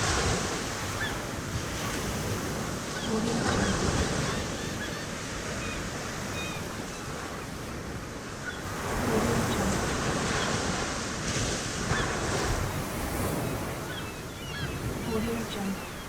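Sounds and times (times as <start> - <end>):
surf washing on a beach: 0.0 - 16.0
seagull cries: 3.0 - 7.2.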